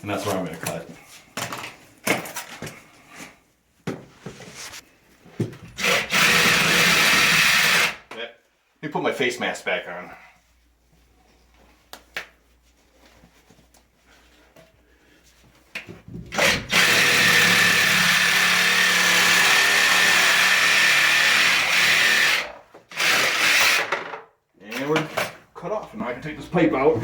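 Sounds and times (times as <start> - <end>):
power saw cutting plastic pipe: 5.8 - 8.0, 16.3 - 24.1.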